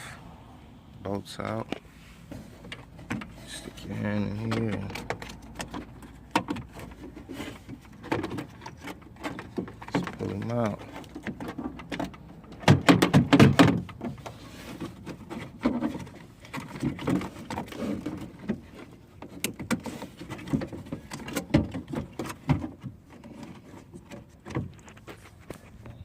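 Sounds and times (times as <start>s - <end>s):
plastic and metal parts rattling: 2.3s - 26.0s.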